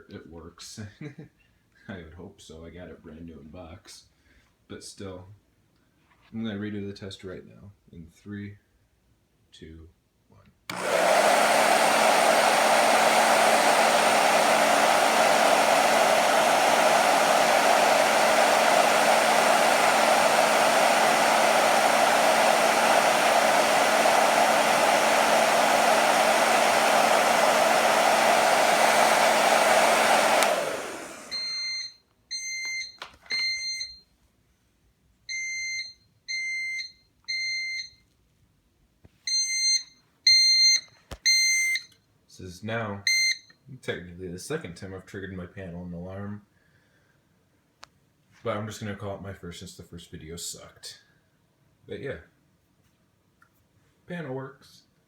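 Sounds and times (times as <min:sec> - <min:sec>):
hair dryer blowing: 0:10.7 - 0:31.9
fire alarm beeping: 0:31.4 - 0:34.0, 0:35.3 - 0:38.0, 0:39.3 - 0:42.0, 0:43.1 - 0:43.5.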